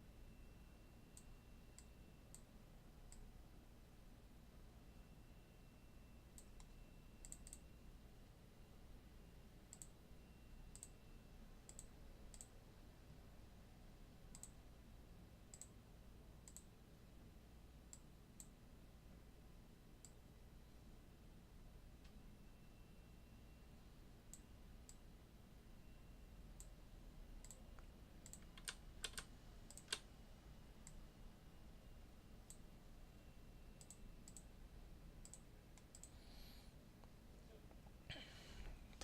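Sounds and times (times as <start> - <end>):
low steady hum: 0.0 - 39.0
computer mouse clicks: 1.1 - 2.5, 6.4 - 7.7, 9.7 - 10.0, 10.7 - 11.0, 11.6 - 12.6, 14.3 - 14.6, 15.5 - 15.8, 16.4 - 16.7, 27.4 - 30.1, 30.8 - 31.0, 33.8 - 34.5, 35.2 - 36.2.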